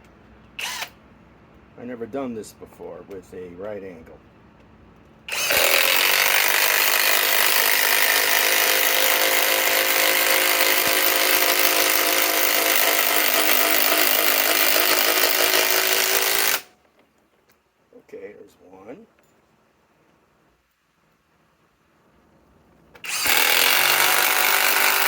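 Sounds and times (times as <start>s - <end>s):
impact wrench driving screw into wood: 5.3s - 16.7s, 23.0s - 25.0s.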